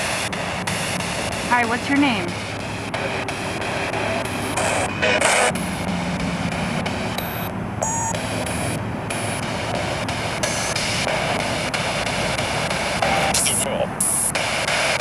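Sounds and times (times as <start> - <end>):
radio static hiss sweeping: 0.0 - 15.0
brief radio tones: 13.0 - 14.3.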